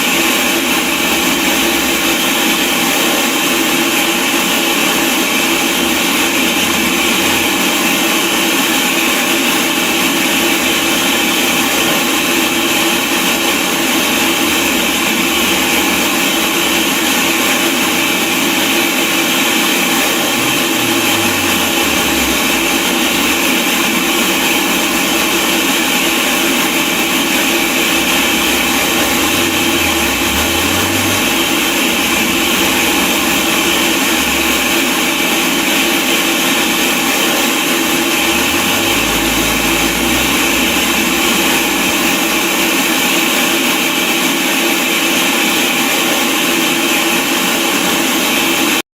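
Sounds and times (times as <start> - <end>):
loud static hiss: 9.7 - 37.0, 37.7 - 43.6.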